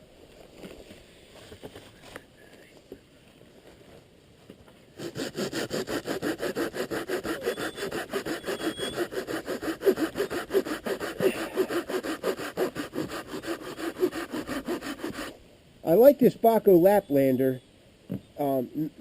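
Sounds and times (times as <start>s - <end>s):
hand saw cutting wood: 5.0s - 15.4s.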